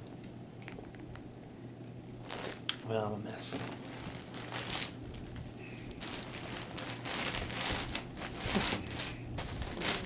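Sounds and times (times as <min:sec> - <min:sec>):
crinkling and rustling: 0:02.2 - 0:10.0.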